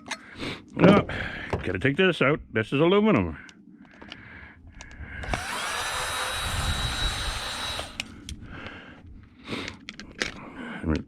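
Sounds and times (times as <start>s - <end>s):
power drill spinning: 5.2s - 8.3s.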